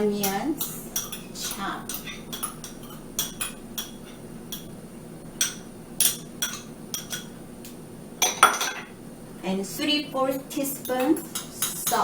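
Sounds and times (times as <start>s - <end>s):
utensils clinking against dish: 0.0s - 4.7s, 5.4s - 7.4s, 8.2s - 9.0s, 10.5s - 12.0s.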